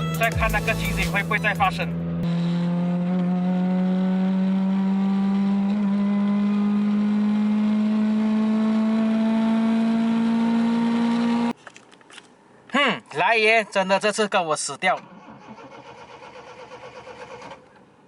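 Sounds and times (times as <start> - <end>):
car engine running: 0.0 - 8.4.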